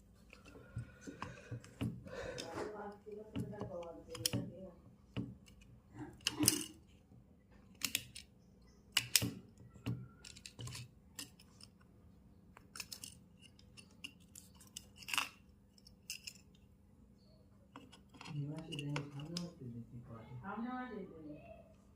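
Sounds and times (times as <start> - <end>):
hand tools clicking and scraping: 0.2 - 4.5, 5.2 - 6.8, 12.6 - 16.6, 17.7 - 19.6.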